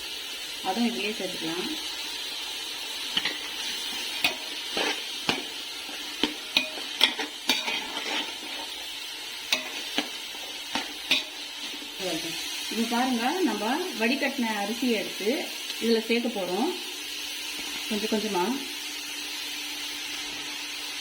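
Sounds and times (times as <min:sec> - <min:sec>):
food sizzling in hot oil: 0:00.0 - 0:21.0
spatula scraping a pan: 0:03.0 - 0:12.0.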